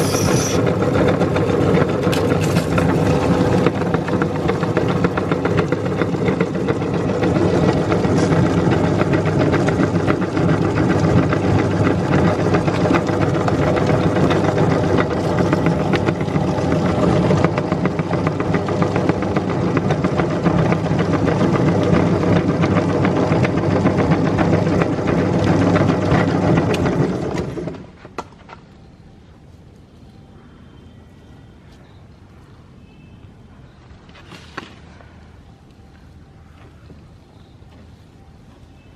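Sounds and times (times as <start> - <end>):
electric meat grinder running: 0.0 - 27.8.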